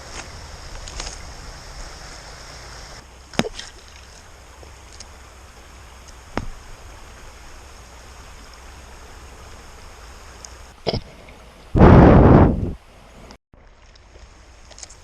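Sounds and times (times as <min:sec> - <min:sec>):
river water flowing: 0:00.0 - 0:11.8, 0:12.9 - 0:15.0.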